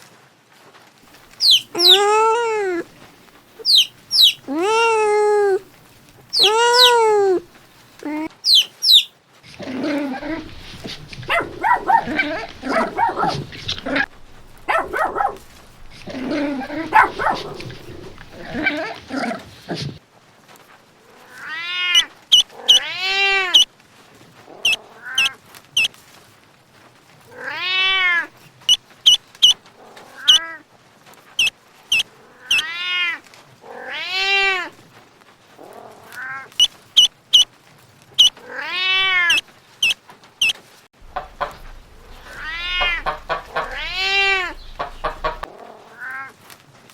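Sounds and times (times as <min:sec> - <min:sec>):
jumble of animal sounds: 0:01.2 - 0:20.0, 0:21.1 - 0:23.7, 0:24.5 - 0:25.4, 0:28.7 - 0:30.5, 0:31.4 - 0:33.0, 0:38.2 - 0:46.3
cat chirps: 0:01.3 - 0:09.1, 0:10.2 - 0:18.8, 0:28.7 - 0:29.6, 0:31.4 - 0:32.9, 0:38.2 - 0:45.5
cat meowing: 0:01.4 - 0:09.1, 0:10.1 - 0:18.8, 0:32.4 - 0:34.7, 0:38.4 - 0:39.4, 0:41.0 - 0:46.2.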